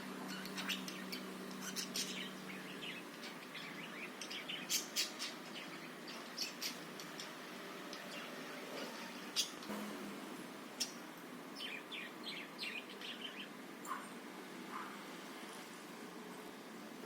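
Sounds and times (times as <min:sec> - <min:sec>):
budgerigars chirping: 0:00.3 - 0:07.4.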